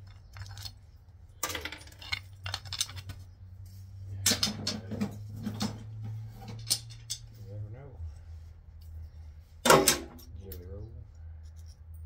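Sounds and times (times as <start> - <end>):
metal tools clinking: 0.0 - 3.2, 4.2 - 7.7
steady low hum: 0.0 - 12.0.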